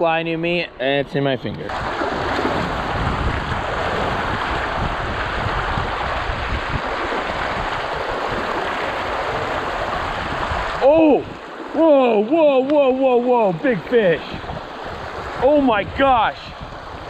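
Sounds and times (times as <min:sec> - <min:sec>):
wind rumble on microphone: 0:01.6 - 0:11.8, 0:14.1 - 0:17.0
mountain stream rushing: 0:01.7 - 0:17.0.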